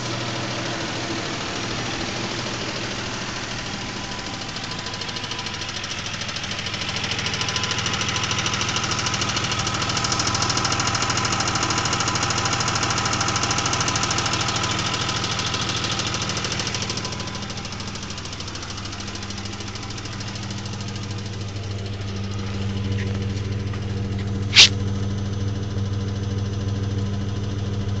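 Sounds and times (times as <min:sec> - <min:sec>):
engine running with fast ticking: 0:00.0 - 0:28.0
sharp click: 0:24.5 - 0:24.7.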